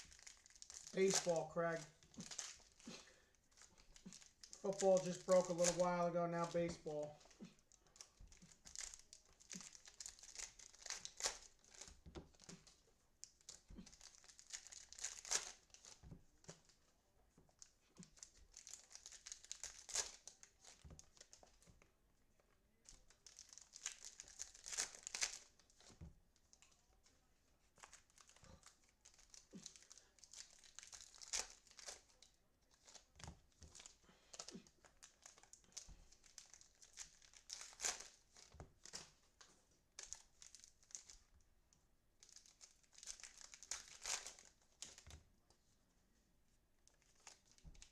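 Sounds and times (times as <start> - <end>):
plastic packaging crinkling and tearing: 0.0 - 16.8, 17.6 - 21.7, 22.8 - 27.1, 27.8 - 41.4, 42.2 - 45.1, 46.8 - 47.9.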